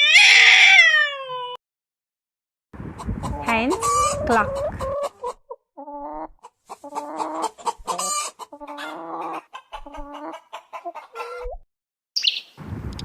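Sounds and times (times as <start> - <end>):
hens clucking: 2.8 - 11.6.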